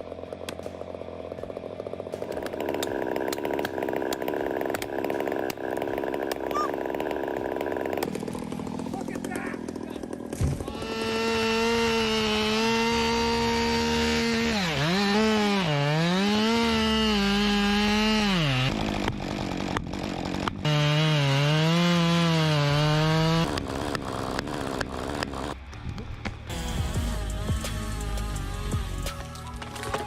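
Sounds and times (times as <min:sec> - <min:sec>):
chainsaw running: 0:00.0 - 0:25.7, 0:26.5 - 0:30.0
knocks and cracks: 0:02.1 - 0:05.6.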